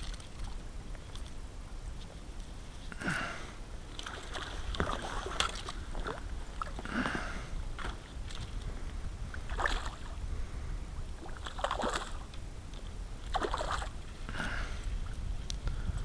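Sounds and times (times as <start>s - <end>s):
steady low rumble: 0.0s - 16.0s
paddle swishing in water: 3.9s - 10.2s, 11.0s - 15.2s.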